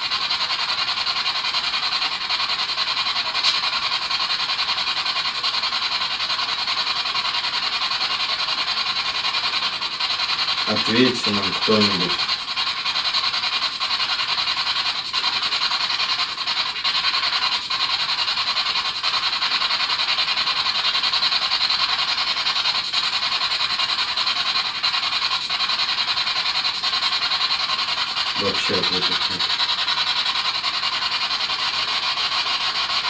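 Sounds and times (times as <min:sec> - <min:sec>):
radio static hiss: 0:10.7 - 0:12.2, 0:28.4 - 0:29.5.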